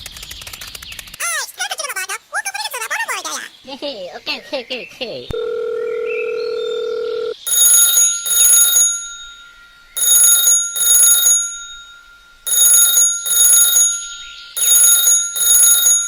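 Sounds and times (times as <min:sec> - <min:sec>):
telephone ringing: 0:05.4 - 0:16.0.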